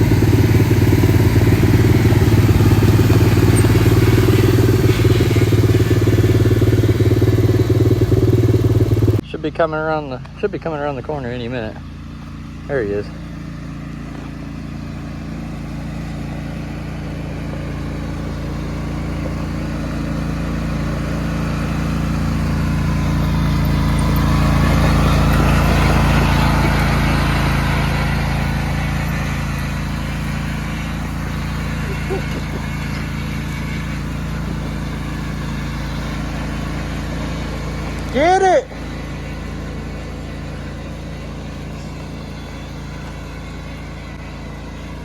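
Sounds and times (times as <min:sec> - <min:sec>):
riding lawnmower engine running: 0:00.0 - 0:45.0.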